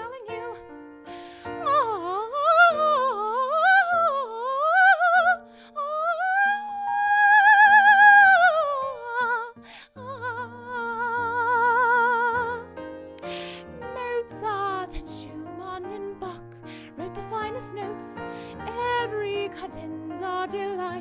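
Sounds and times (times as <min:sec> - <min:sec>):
woman singing with vibrato: 0:01.5 - 0:12.6.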